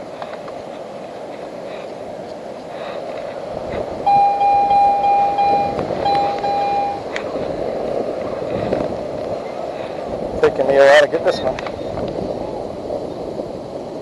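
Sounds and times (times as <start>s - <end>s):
metal detector tone: 4.0s - 7.0s.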